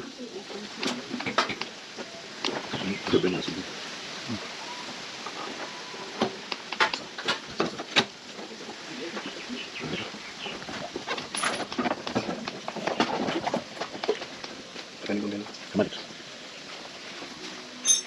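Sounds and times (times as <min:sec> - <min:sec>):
faint background voices: 0:00.0 - 0:06.0, 0:08.4 - 0:10.6
sharp clicks and knocks: 0:06.2 - 0:08.1.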